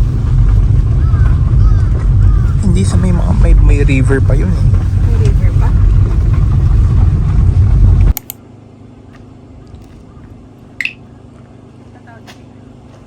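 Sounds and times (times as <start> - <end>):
car road and engine rumble: 0.0 - 13.0
steady low hum: 0.0 - 13.0
clicks: 8.1 - 8.4.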